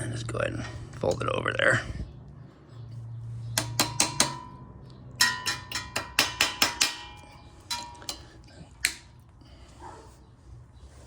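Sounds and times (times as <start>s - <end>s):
metal tool tapping metal pin: 3.6s - 4.6s, 5.2s - 9.0s.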